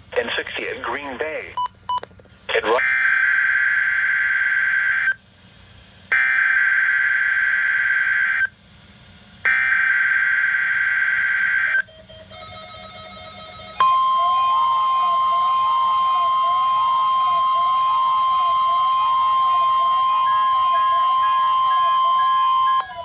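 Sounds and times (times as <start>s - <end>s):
steady warning alarm tone: 2.7s - 5.2s, 6.1s - 8.5s, 9.5s - 23.0s
faint rising and falling tone: 11.8s - 23.0s.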